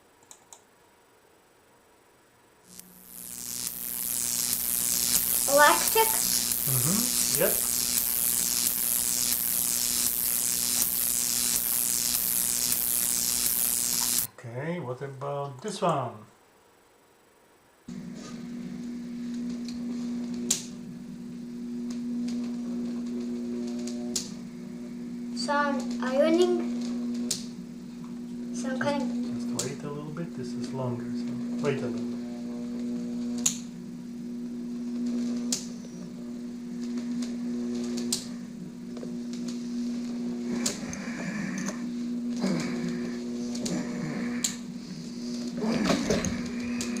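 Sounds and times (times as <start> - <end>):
electric hum with crackling: 0.0 - 47.0
sharp electric zap: 2.7 - 14.3.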